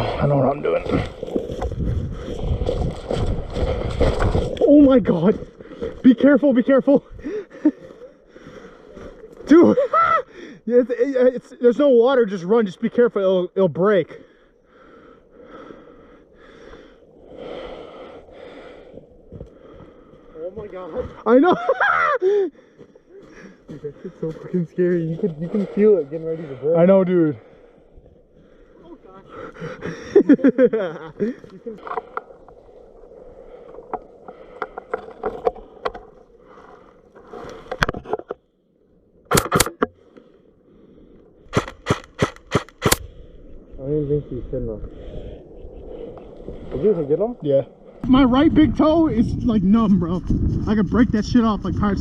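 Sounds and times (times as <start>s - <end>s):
footsteps crunching on snow and ice: 0.7s - 4.6s
person breathing hard: 7.1s - 10.7s, 14.2s - 20.4s, 22.2s - 24.4s, 27.4s - 30.3s, 33.2s - 37.8s, 44.3s - 46.7s
loud sharp cracks: 39.3s - 39.9s, 41.5s - 43.0s.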